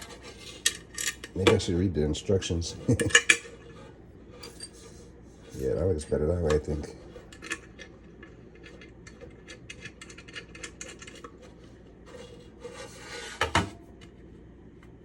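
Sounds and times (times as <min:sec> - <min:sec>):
scraping rub on metal lid: 0:00.0 - 0:00.6, 0:10.2 - 0:13.6.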